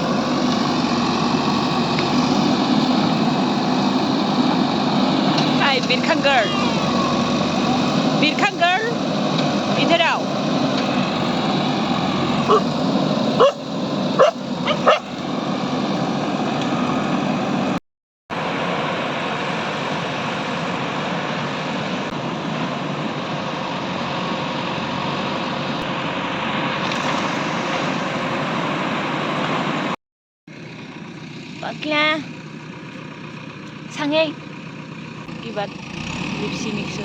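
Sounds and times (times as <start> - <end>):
dog barking: 12.5 - 12.7, 13.4 - 13.6, 14.2 - 15.2.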